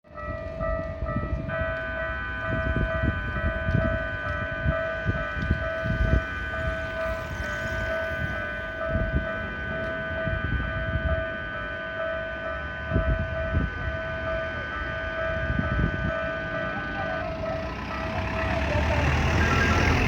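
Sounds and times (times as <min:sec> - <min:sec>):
level crossing warning bells: 0:00.1 - 0:20.0.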